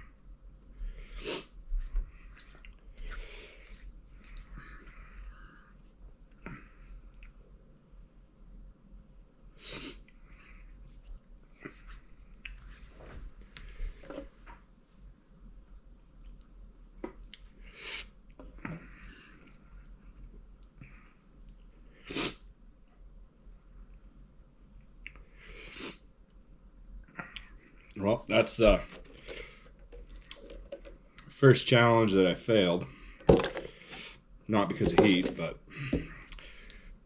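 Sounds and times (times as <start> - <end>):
person sniffling and breathing hard: 0.9 - 1.6.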